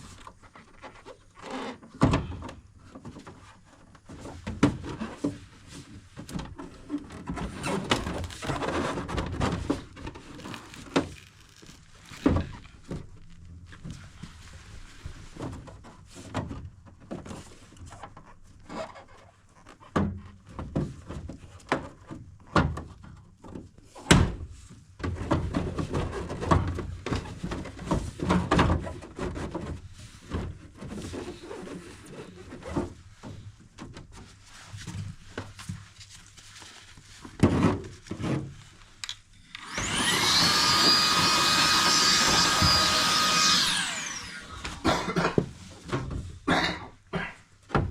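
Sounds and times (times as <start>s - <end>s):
cordless tool motor whine: 39.5s - 44.8s.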